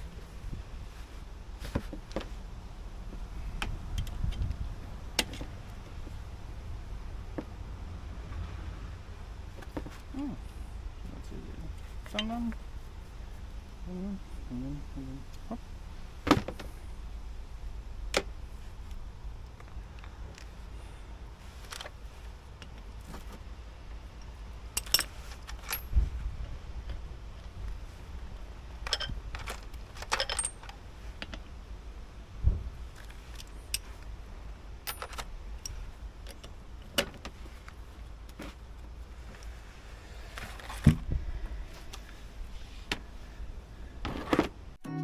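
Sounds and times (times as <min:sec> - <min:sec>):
low steady hum: 0:00.0 - 0:45.0
metal tools clinking: 0:12.0 - 0:12.6, 0:24.1 - 0:27.7, 0:28.7 - 0:31.4, 0:34.8 - 0:37.0.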